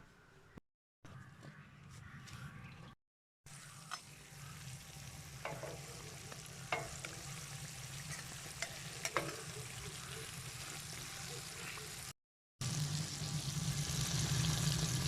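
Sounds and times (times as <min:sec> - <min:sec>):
fish sizzling in hot oil: 0:03.5 - 0:15.0.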